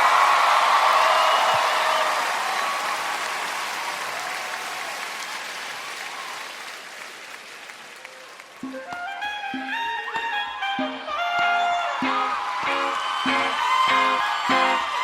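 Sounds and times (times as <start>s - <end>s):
crowd cheering and applauding: 0.0s - 15.0s
music beat: 8.6s - 15.0s.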